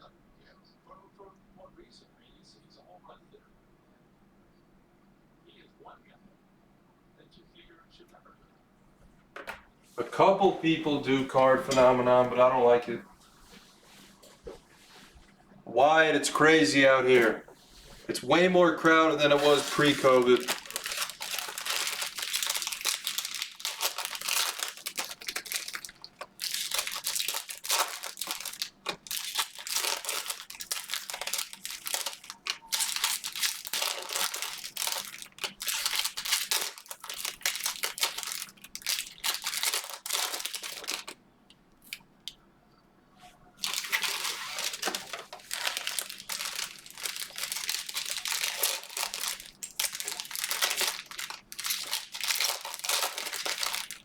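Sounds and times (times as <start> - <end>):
plastic wrappers crinkling and tearing: 10.2 - 12.9, 15.8 - 17.4, 18.0 - 41.2, 43.6 - 54.0.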